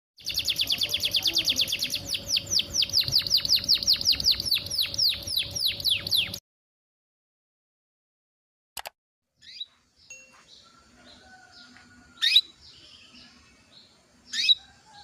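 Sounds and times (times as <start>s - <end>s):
canary chirping: 0.2s - 6.4s, 12.2s - 14.8s.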